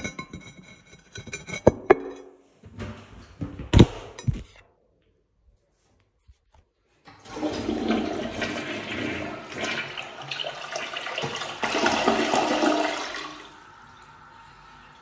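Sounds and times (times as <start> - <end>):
toilet flushing water: 7.1 - 15.0.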